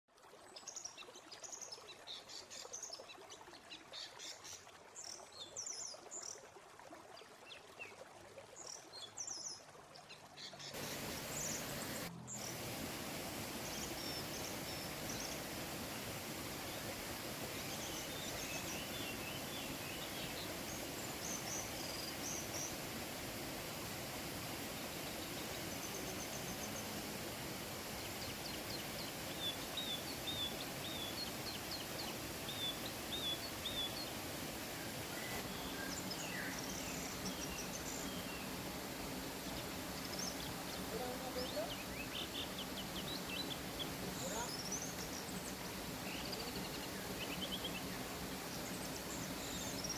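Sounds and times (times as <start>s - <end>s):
birds chirping: 10.7s - 49.9s
waterfall rushing: 10.8s - 49.9s.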